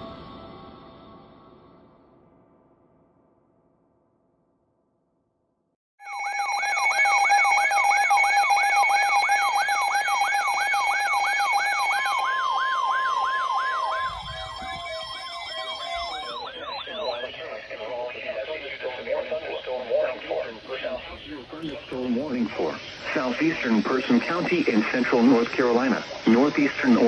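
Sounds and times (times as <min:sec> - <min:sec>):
alert siren falling wail: 0:06.0 - 0:17.2
steady high tones: 0:06.0 - 0:17.8, 0:20.7 - 0:27.0.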